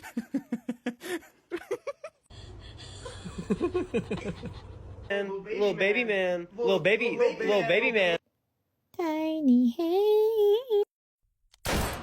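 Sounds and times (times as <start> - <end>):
person chuckling: 0.0 - 5.1.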